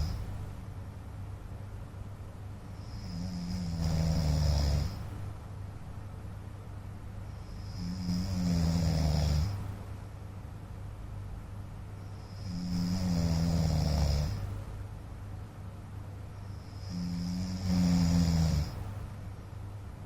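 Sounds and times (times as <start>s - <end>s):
man snoring: 0.0s - 0.2s, 2.8s - 5.1s, 7.4s - 9.7s, 12.2s - 14.5s, 16.6s - 18.9s
quiet breathing: 0.0s - 0.4s, 2.6s - 5.3s, 7.2s - 9.8s, 12.0s - 14.6s, 16.3s - 19.2s.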